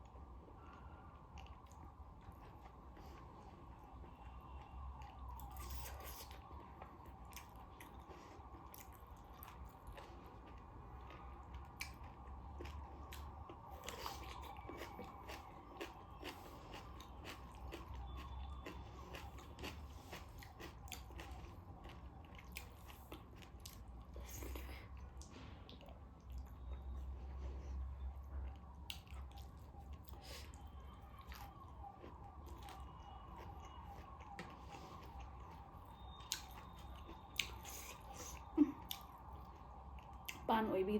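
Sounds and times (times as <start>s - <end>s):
chewing and biting: 0.0s - 40.5s
steady background hum: 0.0s - 40.9s
food crunches: 5.0s - 26.7s, 31.2s - 40.4s.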